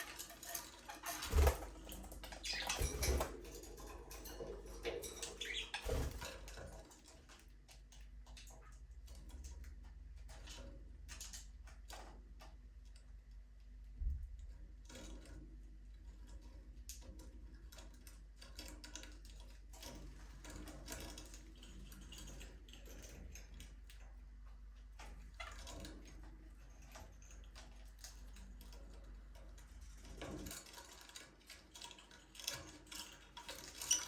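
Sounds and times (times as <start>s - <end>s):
beaks and feet tapping on perches: 0.0s - 13.0s.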